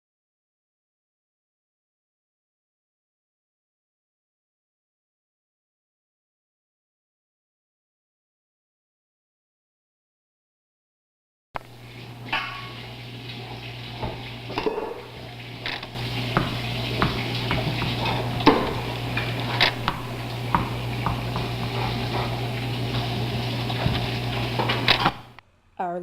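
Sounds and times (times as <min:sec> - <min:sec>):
low electrical hum: 0:11.6 - 0:26.0.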